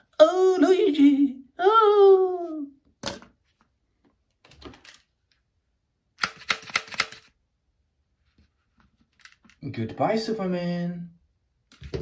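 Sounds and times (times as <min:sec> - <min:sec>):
plastic toy figures clicking: 0:06.2 - 0:07.3.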